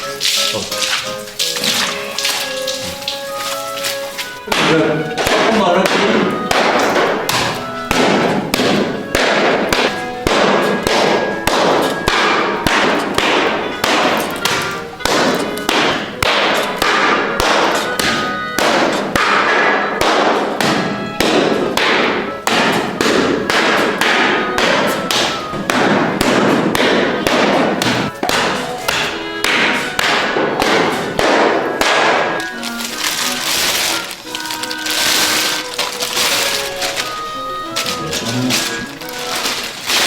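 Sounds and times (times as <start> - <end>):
machine knocking rhythmically: 4.5 - 32.4.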